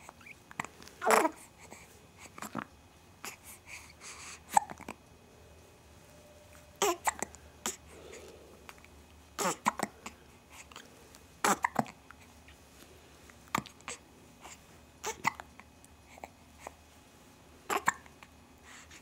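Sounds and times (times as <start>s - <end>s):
person hiccuping: 6.8s - 7.8s, 11.4s - 12.0s, 17.7s - 18.1s.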